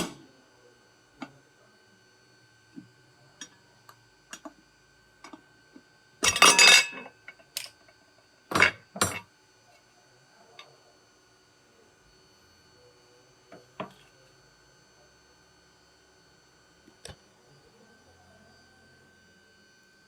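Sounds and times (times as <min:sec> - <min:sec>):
metal parts clinking: 0:06.3 - 0:07.0.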